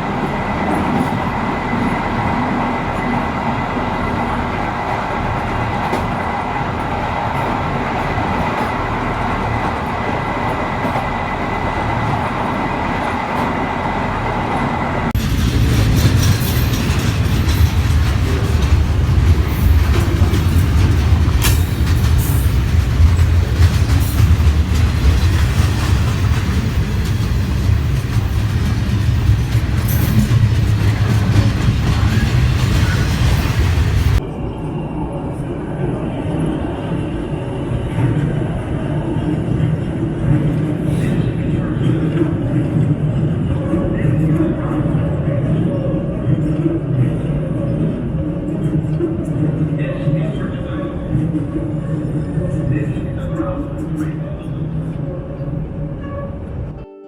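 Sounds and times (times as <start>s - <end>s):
deep train rumble: 0.0s - 56.8s
train rolling on track: 0.0s - 56.8s
wheels clicking on rails: 4.9s - 34.2s.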